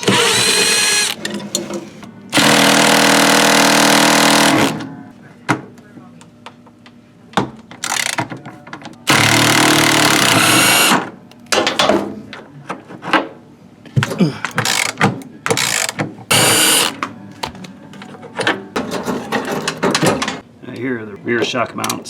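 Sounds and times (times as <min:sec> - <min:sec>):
power drill running: 0:00.0 - 0:01.2, 0:02.4 - 0:04.8, 0:09.1 - 0:11.0, 0:15.6 - 0:17.0
metal tools clanking and rattling: 0:18.3 - 0:20.4.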